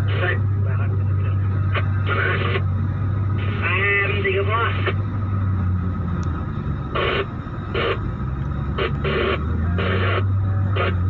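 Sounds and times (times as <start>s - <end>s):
diesel truck engine droning: 0.0s - 11.0s
two-way radio static bursts: 1.7s - 2.7s, 3.4s - 5.0s, 6.9s - 8.1s, 8.7s - 11.0s.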